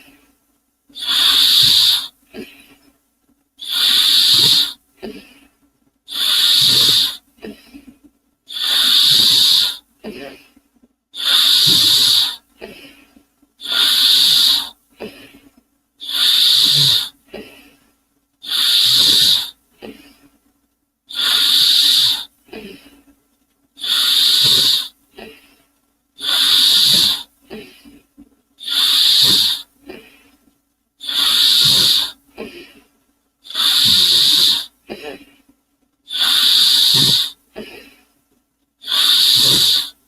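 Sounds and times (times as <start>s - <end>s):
steam engine imitation puffs: 3.6s - 4.8s, 11.2s - 12.4s, 26.2s - 27.3s, 28.6s - 29.6s, 31.0s - 32.2s, 36.1s - 37.4s, 38.8s - 40.0s.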